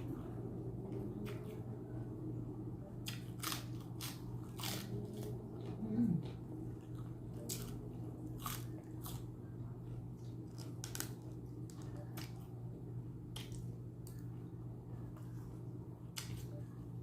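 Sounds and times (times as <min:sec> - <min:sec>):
steady low hum: 0:00.0 - 0:17.0
chewing with crisp crunches: 0:03.0 - 0:12.5.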